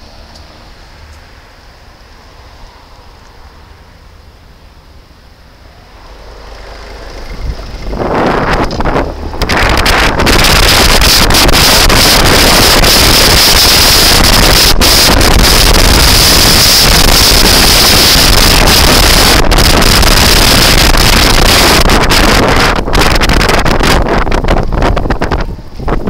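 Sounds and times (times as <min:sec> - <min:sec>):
wind buffeting microphone: 0:05.9 - 0:26.0.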